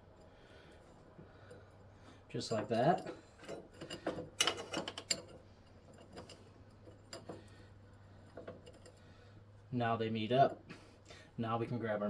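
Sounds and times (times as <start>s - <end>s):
metal chain clinking: 2.4s - 7.6s, 8.2s - 9.0s.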